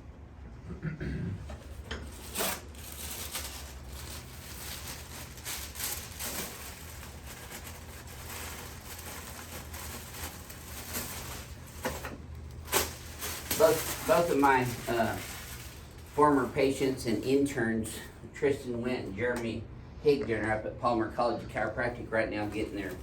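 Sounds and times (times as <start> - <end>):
rustling and scraping handling: 1.5 - 18.1, 22.4 - 23.0.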